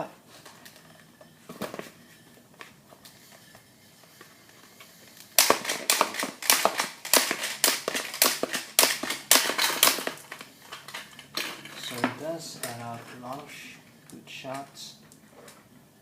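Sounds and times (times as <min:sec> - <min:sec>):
sharp plastic clacks: 0:04.2 - 0:13.4
toy launcher shooting plastic marbles: 0:04.8 - 0:12.2.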